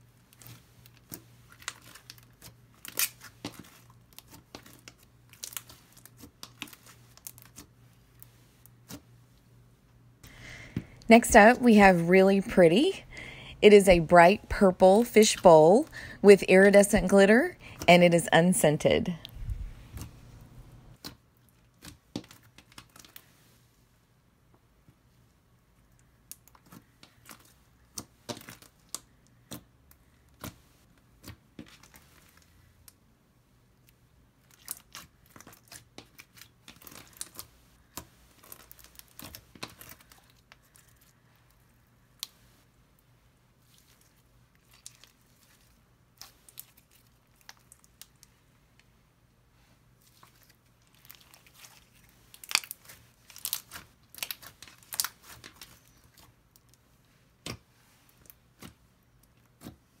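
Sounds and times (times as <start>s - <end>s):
slime crackling and popping: 0.3s - 7.7s, 34.4s - 41.1s, 50.0s - 56.8s.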